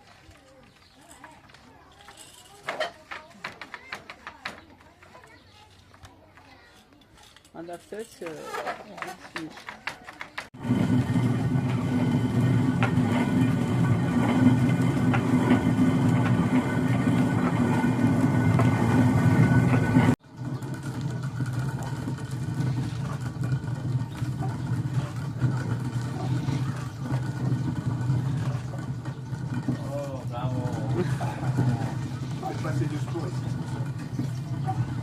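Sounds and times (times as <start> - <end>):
motor engine humming: 10.6 - 35.0.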